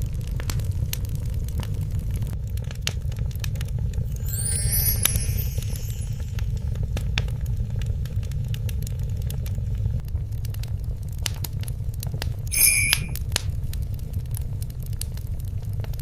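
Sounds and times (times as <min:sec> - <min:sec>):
fire crackling and popping: 0:00.0 - 0:16.0
brief high ringing: 0:04.2 - 0:06.5, 0:12.5 - 0:13.2.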